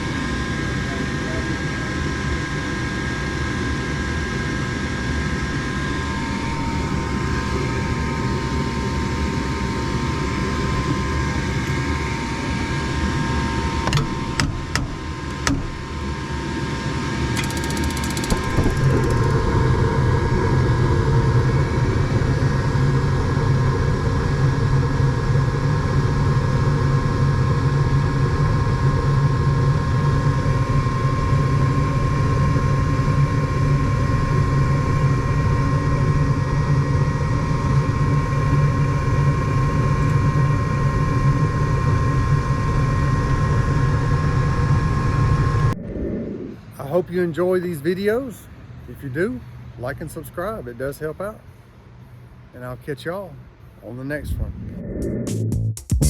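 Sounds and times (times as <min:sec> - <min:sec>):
furnace motor humming: 0:05.3 - 0:20.3
sharp clicks: 0:13.8 - 0:16.0, 0:17.3 - 0:19.5.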